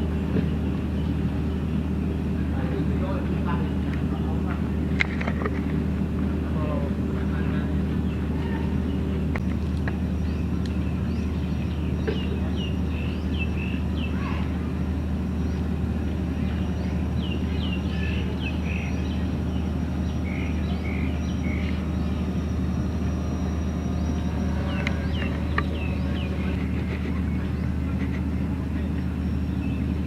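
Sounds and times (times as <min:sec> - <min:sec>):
low motor drone: 0:00.0 - 0:30.0.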